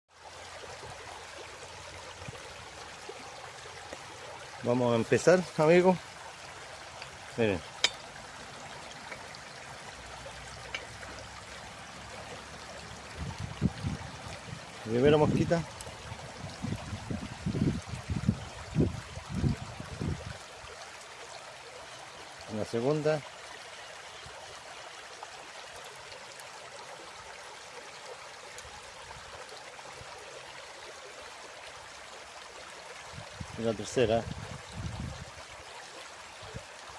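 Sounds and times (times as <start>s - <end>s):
flowing water rushing: 0.1s - 36.9s
faint small ticks: 10.6s - 11.2s.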